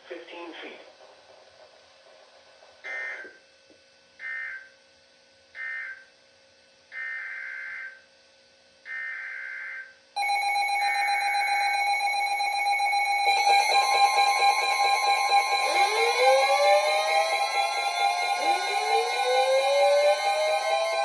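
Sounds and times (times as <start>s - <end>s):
buzzy warbling data bursts: 10.2s - 21.0s
steady electronic alarm tone: 10.2s - 21.0s.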